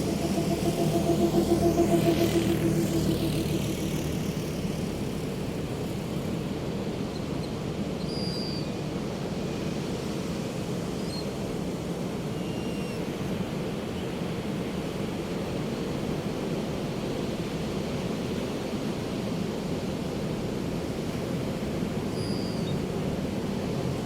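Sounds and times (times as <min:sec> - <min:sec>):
low engine drone: 0:00.0 - 0:07.0.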